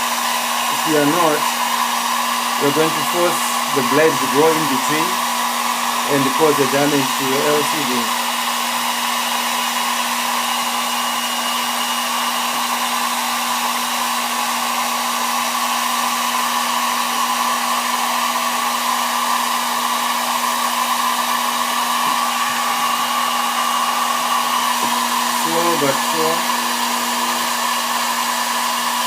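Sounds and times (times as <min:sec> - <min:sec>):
hot-air blower humming: 0:00.0 - 0:29.0.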